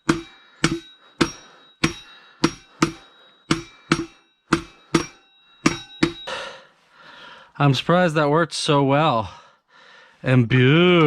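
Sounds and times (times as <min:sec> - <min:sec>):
hammer striking metal: 0:00.0 - 0:06.4.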